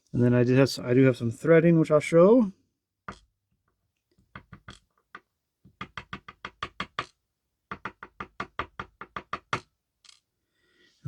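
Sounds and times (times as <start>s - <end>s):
lock core knocking on hard surface: 3.1s - 3.4s, 4.2s - 10.2s.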